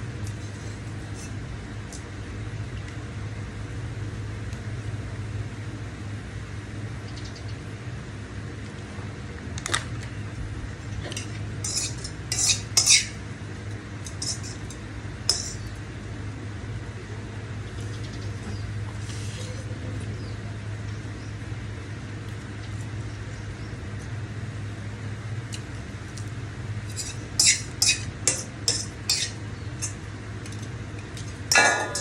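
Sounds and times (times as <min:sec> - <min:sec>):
cutlery clinking on a plate: 0:11.1 - 0:13.2, 0:14.0 - 0:15.7, 0:26.9 - 0:30.6, 0:31.2 - 0:32.0.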